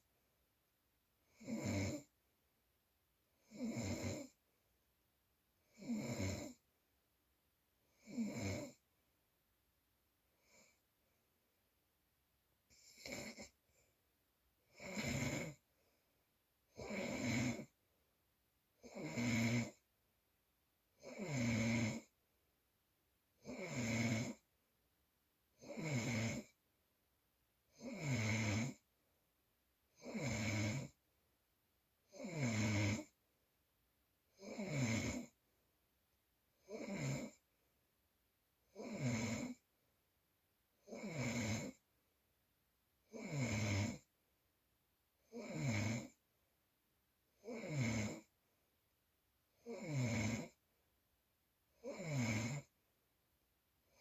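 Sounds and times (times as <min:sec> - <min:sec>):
person snoring: 0:01.3 - 0:02.1, 0:03.4 - 0:04.4, 0:05.7 - 0:06.6, 0:08.0 - 0:08.8, 0:12.7 - 0:13.6, 0:14.7 - 0:15.6, 0:16.7 - 0:17.7, 0:18.8 - 0:19.8, 0:21.0 - 0:22.1, 0:23.4 - 0:24.4, 0:25.6 - 0:26.5, 0:27.8 - 0:28.8, 0:30.0 - 0:31.0, 0:32.1 - 0:33.1, 0:34.4 - 0:35.3, 0:36.6 - 0:37.4, 0:38.8 - 0:39.6, 0:40.9 - 0:41.8, 0:43.1 - 0:44.1, 0:45.3 - 0:46.2, 0:47.4 - 0:48.3, 0:49.6 - 0:50.6, 0:51.8 - 0:52.7.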